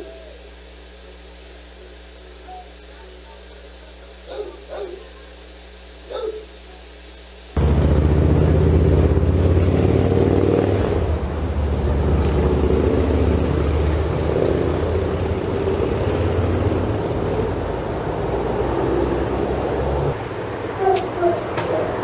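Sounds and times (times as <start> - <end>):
motor droning rumble: 0.0 - 22.0.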